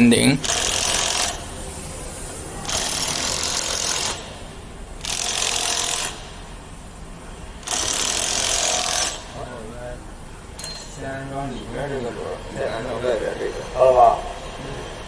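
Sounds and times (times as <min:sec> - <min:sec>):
hissing bursts: 0:00.0 - 0:10.6.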